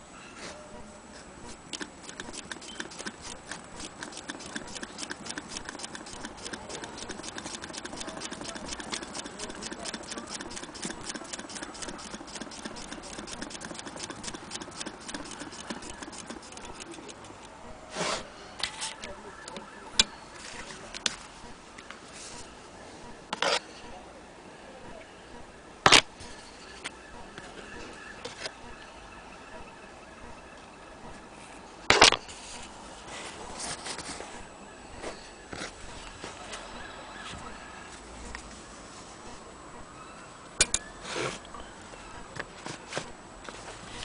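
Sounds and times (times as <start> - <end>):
sewing machine clicking rapidly: 1.7 - 17.5.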